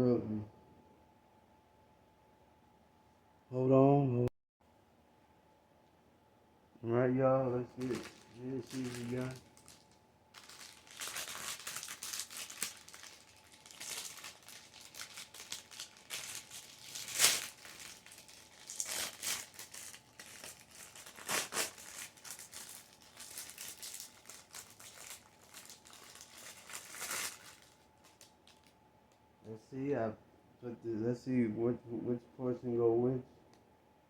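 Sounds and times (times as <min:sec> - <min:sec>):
packaging crinkling and rustling: 0:07.8 - 0:28.8
sharp packaging crackle: 0:07.8 - 0:28.8.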